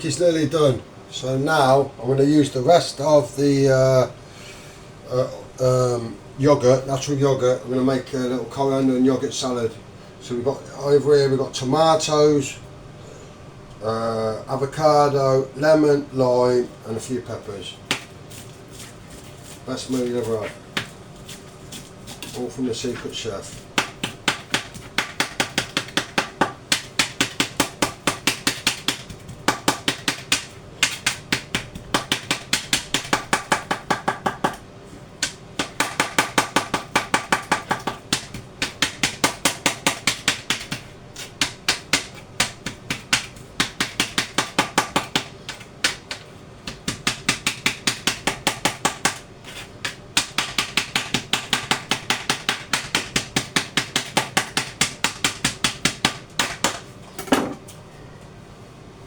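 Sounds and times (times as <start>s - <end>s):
knife chopping on board: 17.9s - 18.1s, 19.9s - 34.6s, 35.2s - 57.6s.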